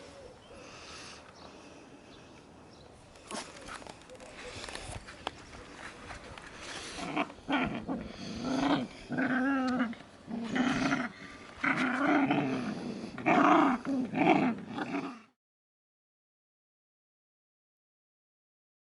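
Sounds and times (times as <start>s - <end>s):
puppies growling: 6.5s - 15.4s.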